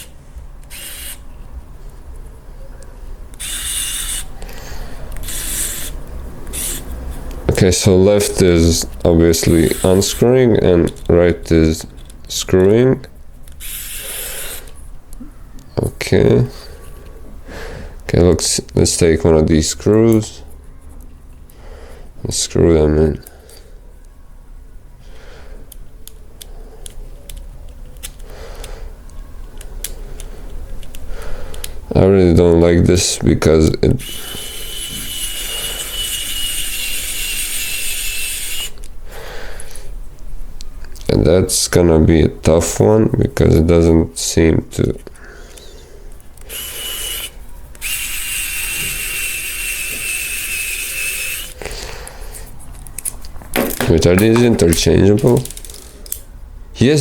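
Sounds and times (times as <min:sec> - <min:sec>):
electric screwdriver motor whining: 0:00.7 - 0:01.2, 0:03.4 - 0:04.3, 0:05.2 - 0:06.8, 0:13.6 - 0:14.7, 0:34.0 - 0:38.8, 0:46.4 - 0:51.6.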